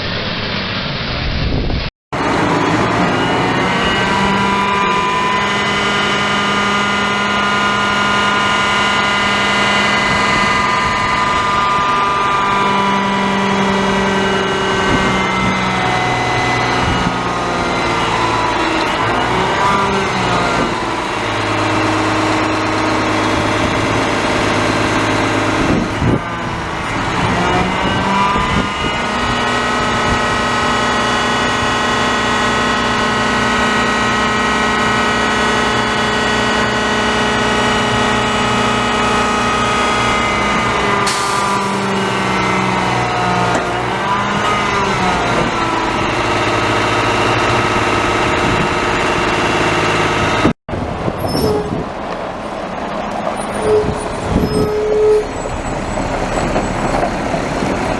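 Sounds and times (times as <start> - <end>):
diesel truck engine idling: 2.2 - 31.6, 34.4 - 51.1.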